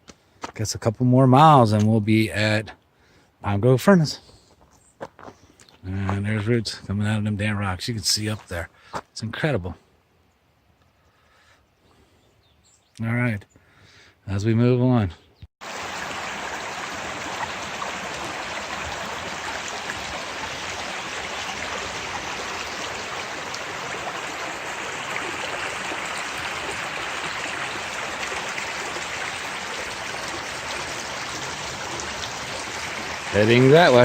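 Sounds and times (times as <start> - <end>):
stream flowing: 15.6 - 34.0.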